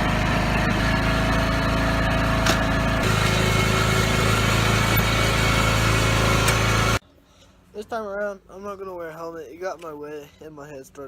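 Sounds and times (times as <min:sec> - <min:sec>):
riding lawn mower engine: 0:00.0 - 0:07.0.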